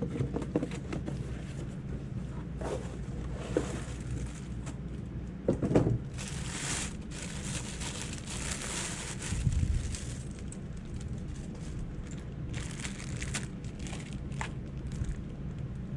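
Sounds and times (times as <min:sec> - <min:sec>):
steady low hum: 0:00.0 - 0:15.9
crinkling: 0:02.5 - 0:05.0, 0:06.0 - 0:15.9.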